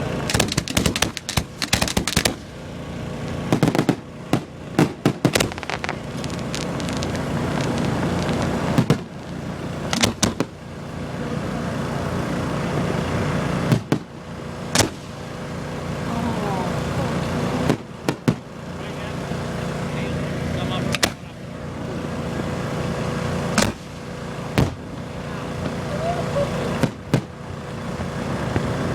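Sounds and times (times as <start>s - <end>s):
steady rushing noise: 0.0s - 16.1s
fireworks bangs and crackles: 0.0s - 20.0s, 20.9s - 28.9s.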